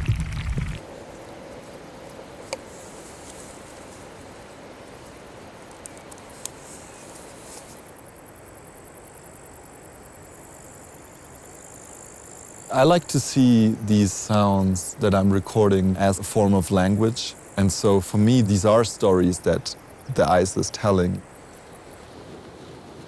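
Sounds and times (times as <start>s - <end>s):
melting ice clicks and pops: 0.0s - 0.8s
faint steady hiss: 0.0s - 23.0s.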